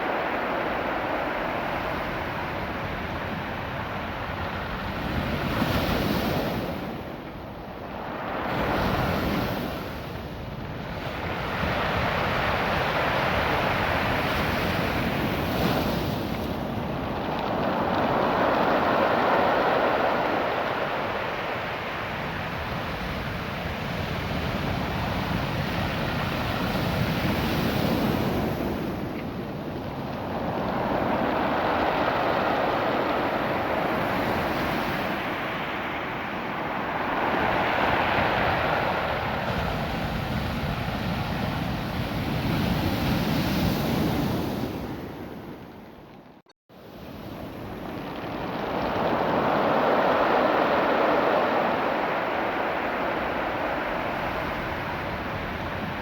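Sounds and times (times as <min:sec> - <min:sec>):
waves washing over cobbles: 0:11.0 - 0:25.1, 0:29.3 - 0:40.8, 0:47.0 - 0:56.0.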